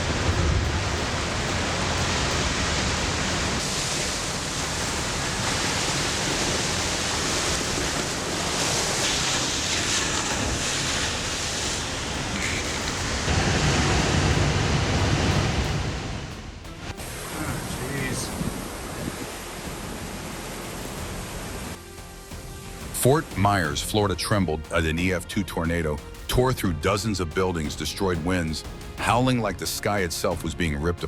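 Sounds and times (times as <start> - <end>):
heavy surf crashing: 0.0 - 21.8
wind: 0.0 - 24.1.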